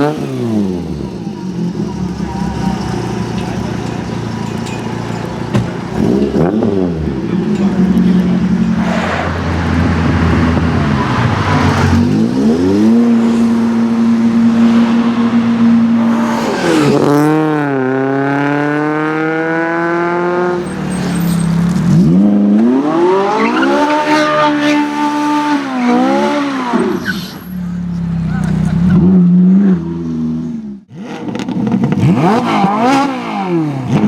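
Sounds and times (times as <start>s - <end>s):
car engine revving: 0.0s - 34.0s.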